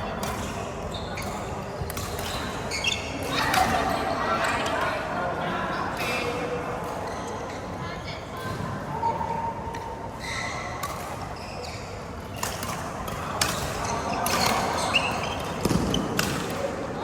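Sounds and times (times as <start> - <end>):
sports hall noise: 0.0 - 17.0
rackets hitting shuttlecock: 0.1 - 2.7, 12.4 - 16.9.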